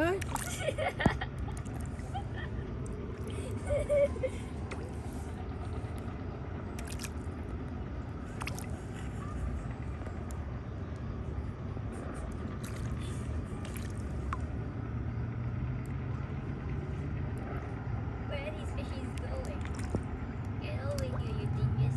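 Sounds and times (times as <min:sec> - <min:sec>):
fish splashing at surface: 0:00.0 - 0:00.7, 0:06.7 - 0:07.3, 0:08.3 - 0:09.1, 0:12.6 - 0:14.4, 0:19.5 - 0:20.1
low rumble: 0:00.0 - 0:21.9.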